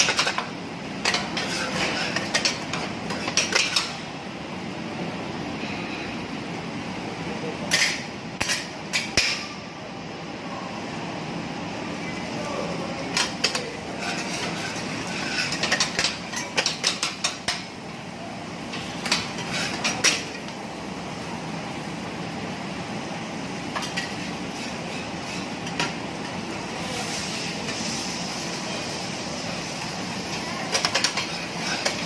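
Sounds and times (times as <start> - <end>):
metal spatulas clacking on griddle: 0.0 - 4.0, 15.2 - 17.7, 19.0 - 20.4, 30.7 - 32.0
food sizzling on hot plate: 22.6 - 32.0.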